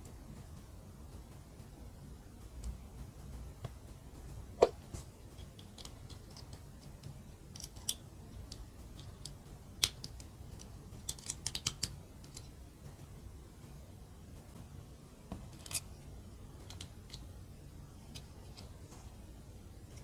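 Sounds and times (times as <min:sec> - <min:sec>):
plastic bricks clicking together: 0:05.4 - 0:12.5, 0:16.6 - 0:17.2.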